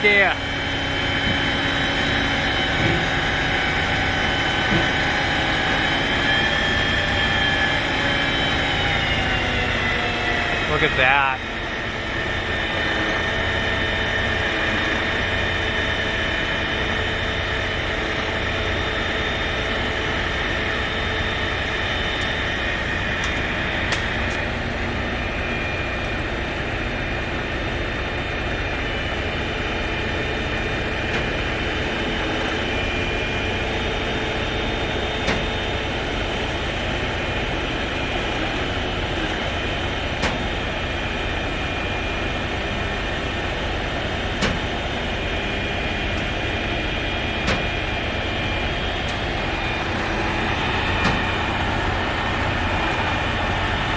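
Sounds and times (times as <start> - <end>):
crane engine running: 0.0 - 53.9.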